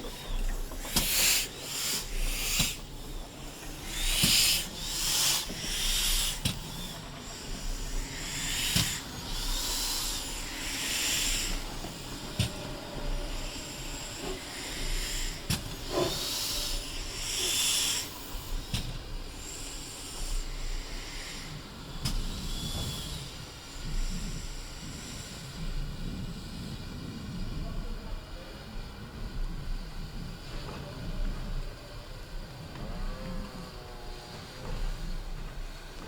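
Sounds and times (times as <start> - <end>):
steam locomotive puffing: 0.0 - 27.4, 29.1 - 36.0.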